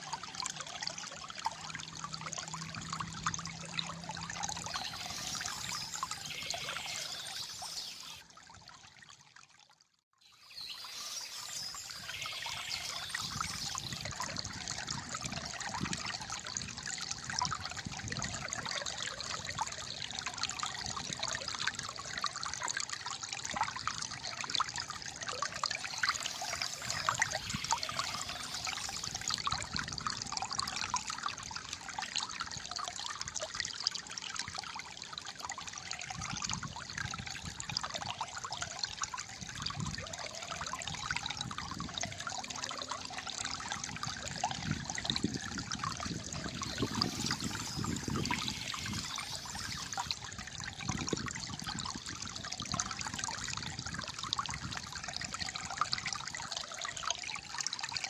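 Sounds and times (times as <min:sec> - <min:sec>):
water gurgling and trickling: 0:00.0 - 0:58.0.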